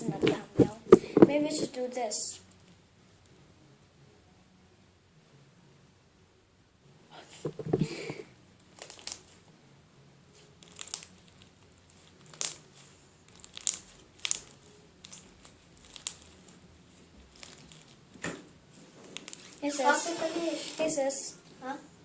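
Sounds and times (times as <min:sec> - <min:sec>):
slime crackling and popping: 0:08.7 - 0:09.4, 0:10.6 - 0:16.6, 0:17.2 - 0:18.0, 0:19.0 - 0:20.8.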